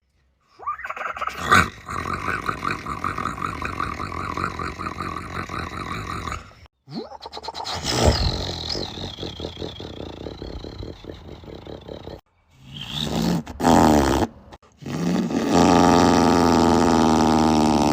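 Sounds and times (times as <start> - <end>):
man imitating diesel engine: 1.8 - 12.2, 14.8 - 17.9.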